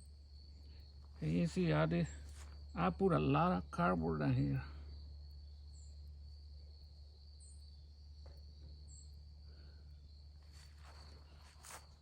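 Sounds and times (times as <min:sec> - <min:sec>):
crickets trilling: 0:00.0 - 0:12.0
soft rustles: 0:10.4 - 0:12.0.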